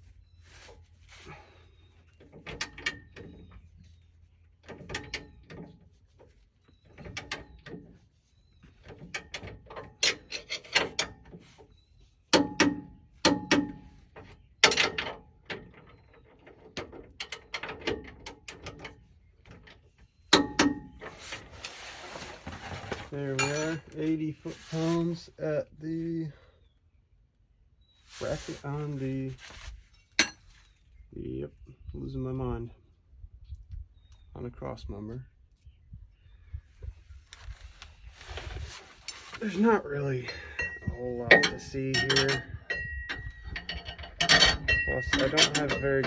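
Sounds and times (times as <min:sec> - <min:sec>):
metallic ring: 0:23.4 - 0:23.9, 0:30.0 - 0:30.5, 0:40.5 - 0:46.0.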